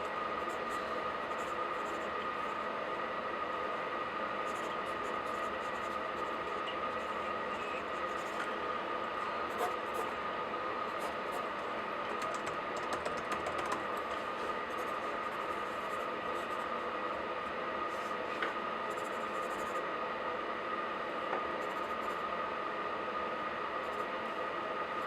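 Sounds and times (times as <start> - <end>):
steady background hum: 0.0 - 25.0
laptop keyboard typing: 12.1 - 13.9.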